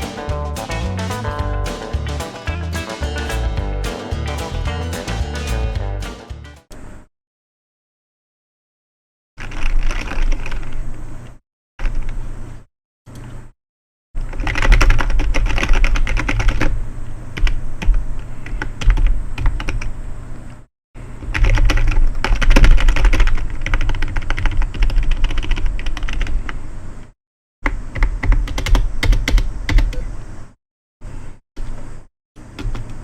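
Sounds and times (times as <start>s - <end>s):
fast keyboard typing: 14.3s - 16.7s, 17.4s - 19.9s, 21.3s - 26.5s, 27.9s - 30.0s.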